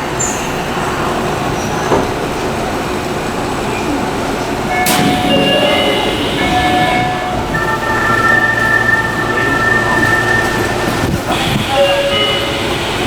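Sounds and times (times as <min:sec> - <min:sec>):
train car noise: 0:00.0 - 0:13.0
electronic door chime: 0:04.7 - 0:13.0.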